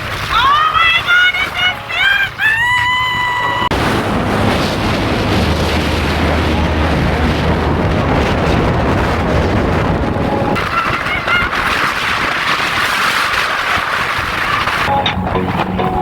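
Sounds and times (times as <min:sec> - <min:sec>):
wind on microphone: 0:00.0 - 0:16.0
low engine drone: 0:01.5 - 0:10.6.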